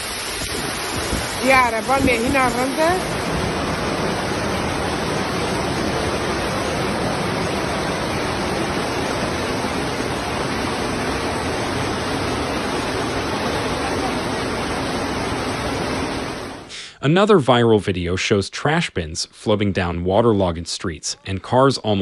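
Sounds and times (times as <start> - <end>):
floodwater rushing: 0.0 - 16.7.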